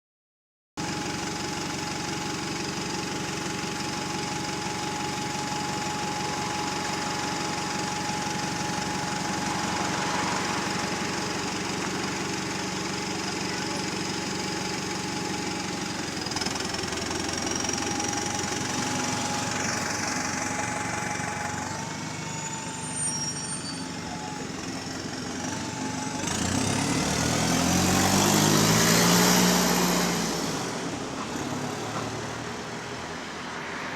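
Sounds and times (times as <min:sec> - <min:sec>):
bus engine running: 0:00.8 - 0:33.9
leaking exhaust noise: 0:05.7 - 0:25.5.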